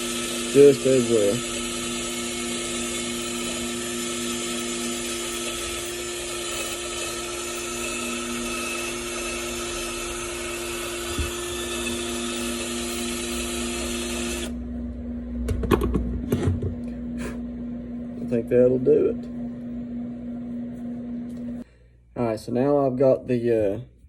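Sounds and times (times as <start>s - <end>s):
power tool whining: 0.0s - 14.7s.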